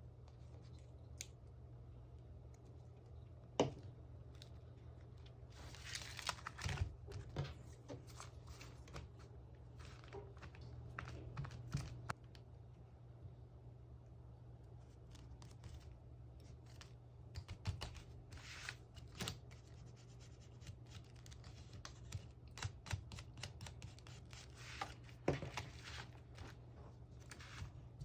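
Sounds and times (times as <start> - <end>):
faint low hum: 0.0 - 28.0
paper rustling: 5.5 - 12.2, 14.9 - 28.0.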